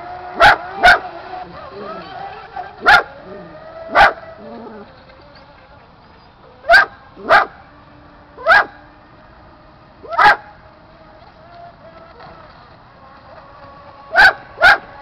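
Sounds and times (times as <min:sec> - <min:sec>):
dog barking: 0:00.4 - 0:01.0, 0:02.8 - 0:03.1, 0:03.9 - 0:04.2, 0:06.7 - 0:07.5, 0:08.4 - 0:08.7, 0:14.2 - 0:14.8.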